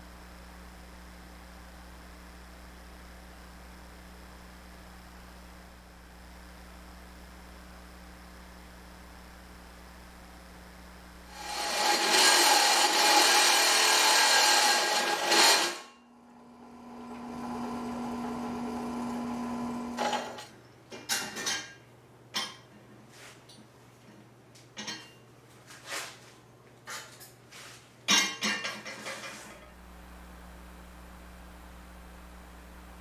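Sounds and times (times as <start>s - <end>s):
quiet steady hum: 0.0s - 11.3s, 29.1s - 33.0s
power tool running: 11.1s - 20.4s.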